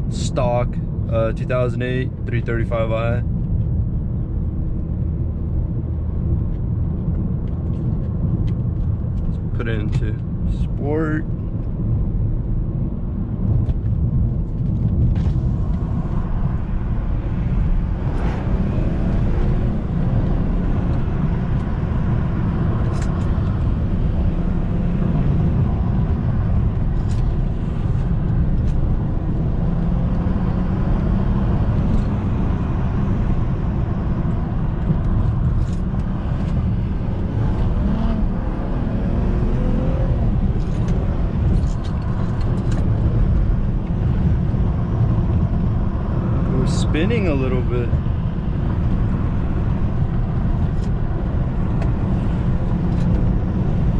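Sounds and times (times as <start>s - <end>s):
road rumble: 0.0s - 53.9s
car engine accelerating: 13.4s - 53.9s.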